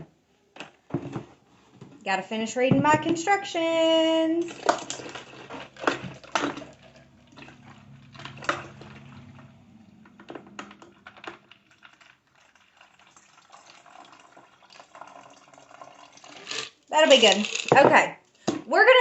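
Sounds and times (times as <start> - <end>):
kitchen things clicking and knocking: 2.6 - 3.4, 4.4 - 7.2, 16.3 - 18.7
low hum: 3.8 - 12.3.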